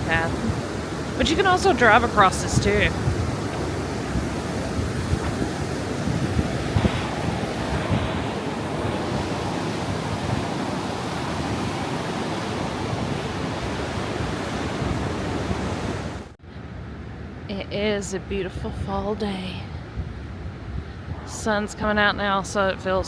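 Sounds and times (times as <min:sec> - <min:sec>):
river rapids rushing: 0:00.0 - 0:16.4
wind buffeting microphone: 0:00.0 - 0:23.0.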